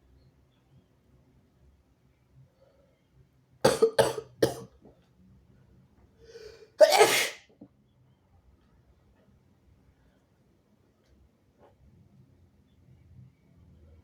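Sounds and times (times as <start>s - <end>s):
person coughing harshly: 3.6s - 4.7s, 6.8s - 7.4s
person sneezing: 6.8s - 7.4s.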